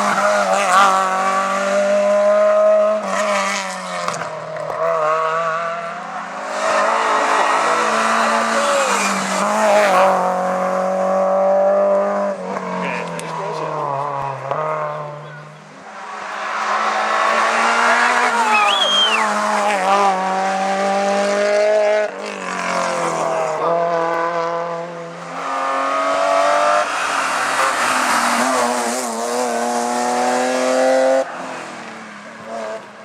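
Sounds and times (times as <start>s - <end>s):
race car engines accelerating: 0.0s - 33.0s
tyre squeal: 17.8s - 19.5s.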